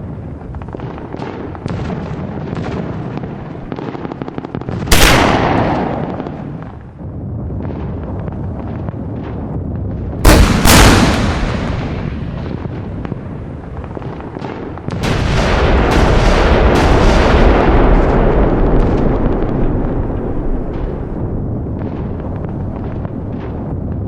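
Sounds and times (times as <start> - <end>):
loud bangs with rumbling decay: 0.0 - 24.0
gunfire cracks: 3.7 - 6.8, 10.2 - 12.8.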